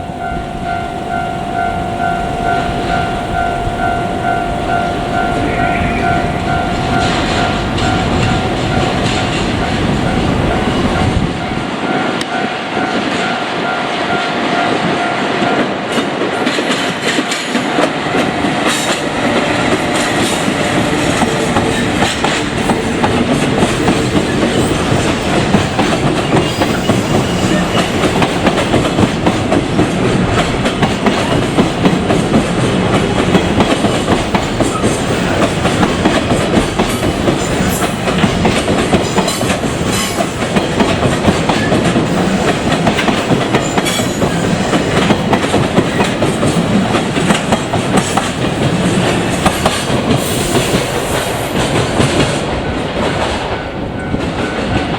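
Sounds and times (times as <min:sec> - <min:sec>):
level crossing alarm bell: 0:00.0 - 0:14.3
train wheels clacking over rail joints: 0:04.6 - 0:13.3, 0:15.5 - 0:54.9.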